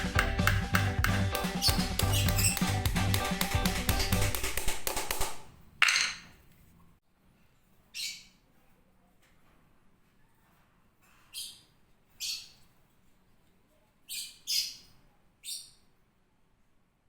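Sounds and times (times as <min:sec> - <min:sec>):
lovebird chirping: 0:01.6 - 0:02.7.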